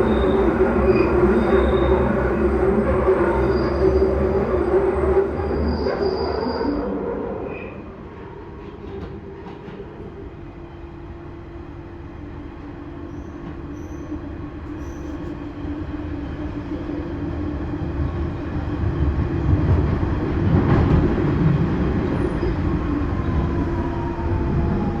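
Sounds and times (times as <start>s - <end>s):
falling whine: 0.0s - 6.5s
underground train running: 0.0s - 25.0s.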